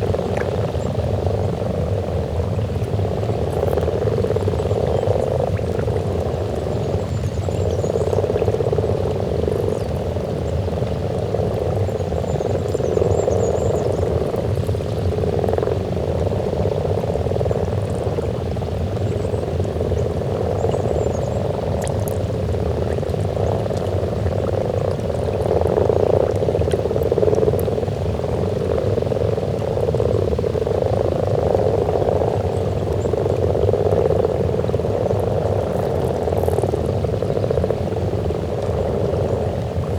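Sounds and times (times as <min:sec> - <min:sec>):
frogs croaking in chorus: 0:00.0 - 0:39.9.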